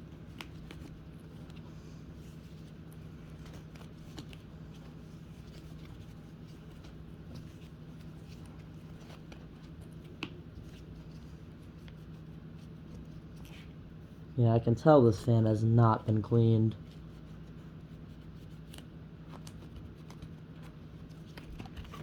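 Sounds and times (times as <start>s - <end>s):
cloth rubbing fan grill: 0.0s - 15.2s
low steady hum: 0.0s - 22.0s.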